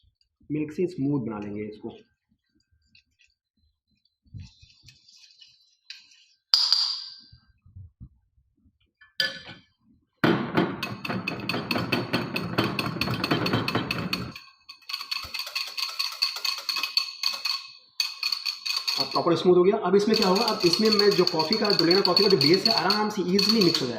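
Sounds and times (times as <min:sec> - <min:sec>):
spoon scraping and clicking: 0:04.4 - 0:06.8, 0:12.4 - 0:19.2, 0:20.0 - 0:23.9
spoon clinking on container: 0:20.0 - 0:23.9.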